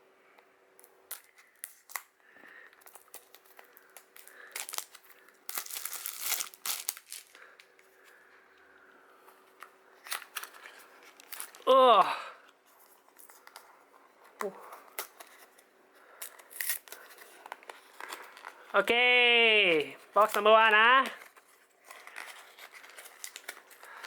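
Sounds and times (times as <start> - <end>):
packaging tearing and crinkling: 0.8 - 2.1, 2.7 - 7.8, 10.0 - 11.6, 14.7 - 18.7, 21.2 - 24.0.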